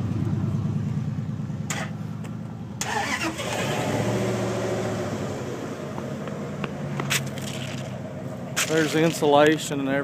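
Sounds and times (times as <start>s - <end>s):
vehicle passing by: 0.0s - 9.3s
vehicle engine running: 0.0s - 10.0s.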